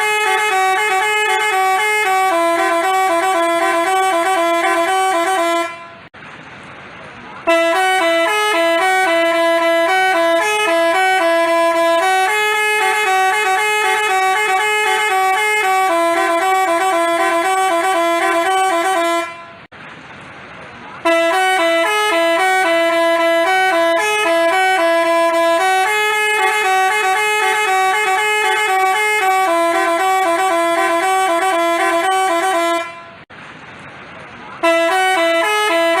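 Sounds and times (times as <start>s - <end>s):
multi-tone bus horn melody: 0.0s - 6.2s, 7.4s - 19.7s, 21.0s - 33.3s, 34.6s - 36.0s.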